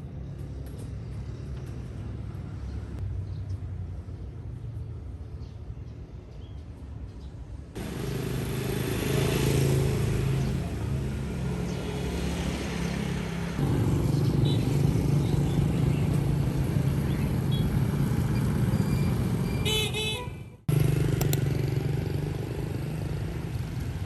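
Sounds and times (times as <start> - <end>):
road noise: 0.0 - 24.0
vehicle engine running: 13.6 - 20.1.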